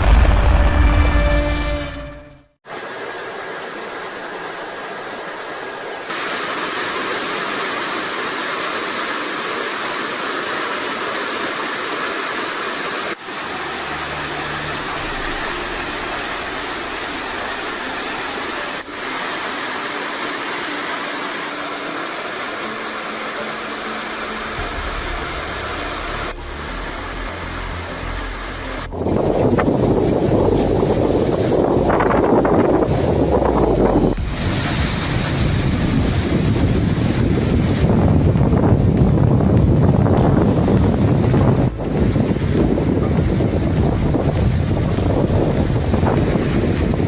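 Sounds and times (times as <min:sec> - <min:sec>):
low rumble: 0:00.0 - 0:02.5, 0:24.3 - 0:47.0
canal water rushing: 0:02.6 - 0:47.0.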